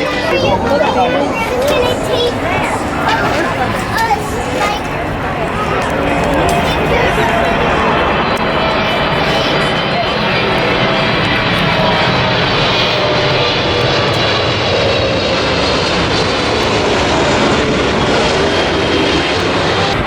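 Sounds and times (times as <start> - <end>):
jet airliner flying overhead: 0.0 - 20.0.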